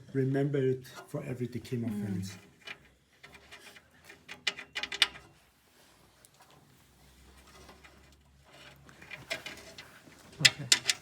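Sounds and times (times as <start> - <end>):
small metal parts clicking: 9.0 - 11.0.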